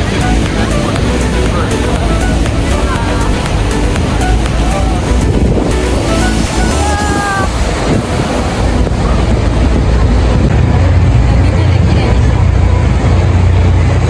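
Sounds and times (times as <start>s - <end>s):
rushing water roar: 0.0s - 14.0s
wind buffeting microphone: 0.0s - 14.0s.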